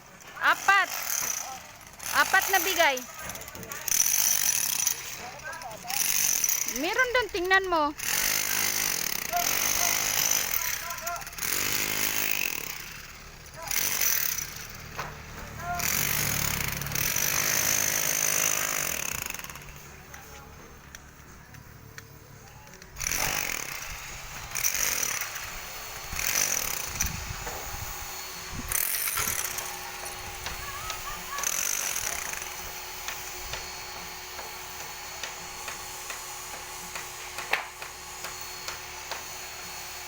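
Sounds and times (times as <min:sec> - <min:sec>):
construction din: 0:00.0 - 0:40.0.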